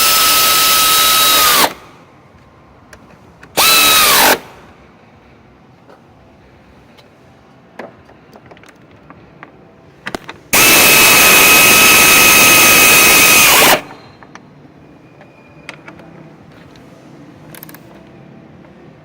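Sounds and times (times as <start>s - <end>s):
power tool whirring: 0.0s - 1.9s, 3.6s - 4.6s, 10.6s - 14.1s.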